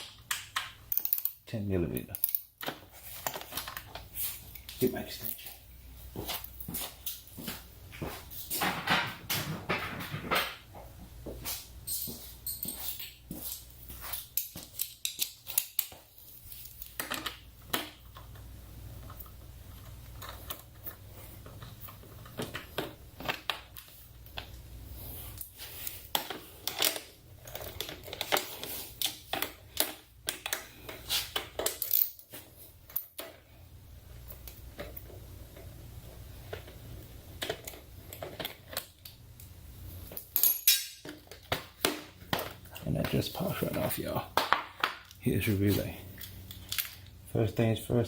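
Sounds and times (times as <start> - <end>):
small metal clicks and knocks: 0.0 - 5.4, 12.0 - 24.6, 25.4 - 33.4, 46.1 - 47.2.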